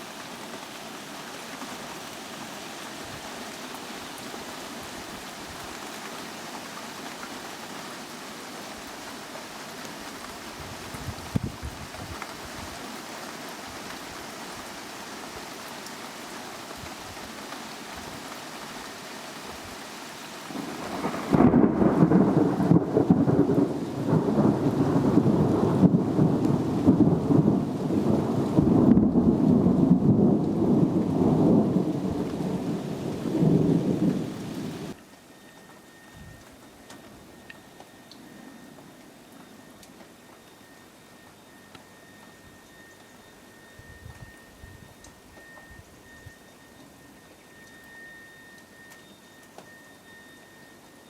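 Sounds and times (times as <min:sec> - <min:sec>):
rain hiss: 0:00.0 - 0:51.0
thunder rumbling: 0:20.5 - 0:35.0.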